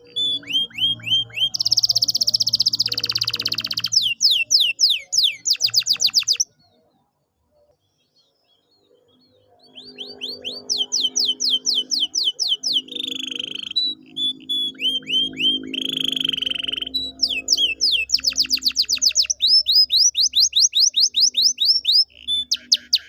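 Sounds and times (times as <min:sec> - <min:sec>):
canary singing: 0:00.0 - 0:06.9, 0:08.0 - 0:23.0.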